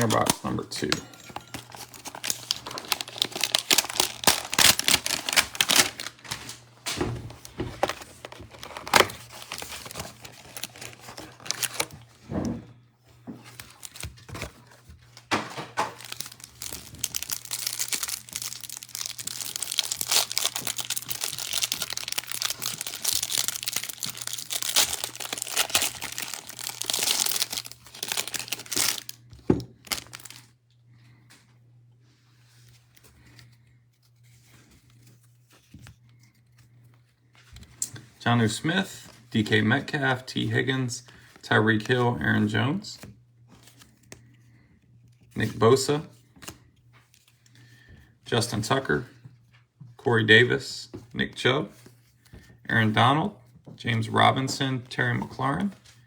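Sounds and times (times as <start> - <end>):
plastic wrapping crinkling and tearing: 0.0 - 12.1, 13.4 - 30.5.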